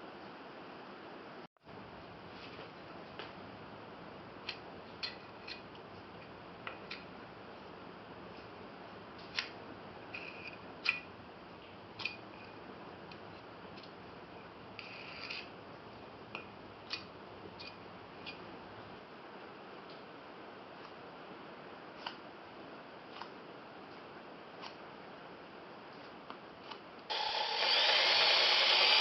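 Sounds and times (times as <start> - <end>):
faint steady hiss: 0.0 - 27.2
scratchy rub: 14.8 - 15.6.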